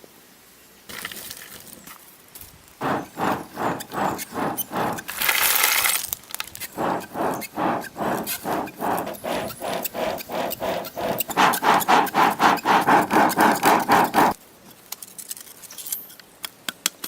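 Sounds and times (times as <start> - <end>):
stone rubbing against stone: 2.8 - 5.3, 6.8 - 14.4
harsh stone scrape: 2.8 - 5.7, 6.7 - 14.4.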